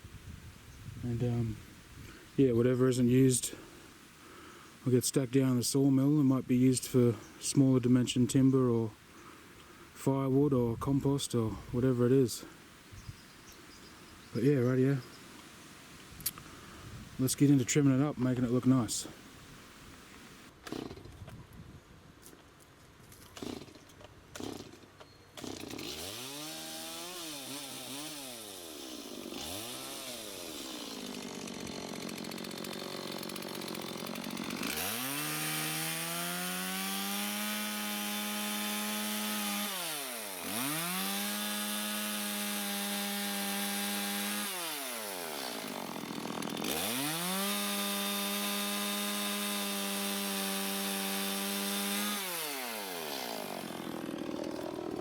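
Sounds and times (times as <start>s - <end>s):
chainsaw revving and cutting: 20.6s - 21.2s, 23.3s - 24.8s, 25.4s - 55.0s.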